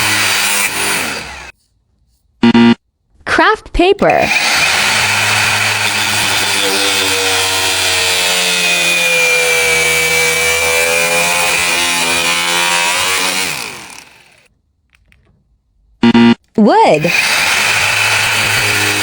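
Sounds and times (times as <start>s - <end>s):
angle grinder cutting paper: 0.0s - 1.6s, 4.0s - 14.5s, 16.9s - 19.0s.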